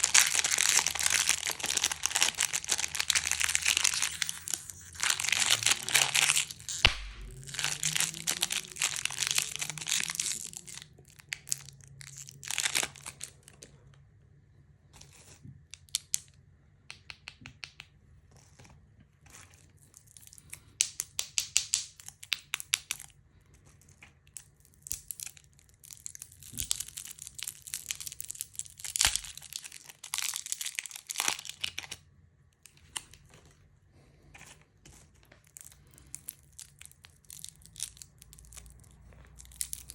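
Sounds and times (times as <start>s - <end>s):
plastic wrappers crinkling: 0.0s - 13.7s, 23.9s - 32.0s, 32.7s - 39.9s
faint low hum: 0.0s - 21.2s.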